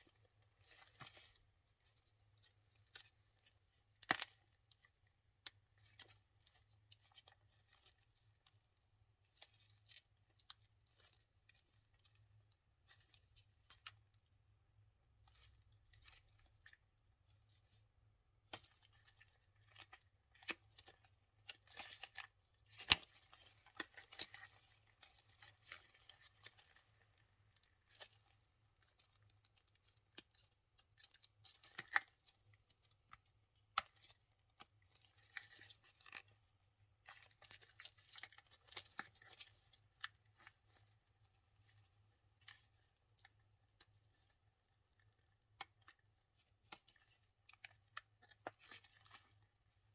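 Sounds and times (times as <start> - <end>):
silicone mold peeling and crackling: 0.0 - 49.9.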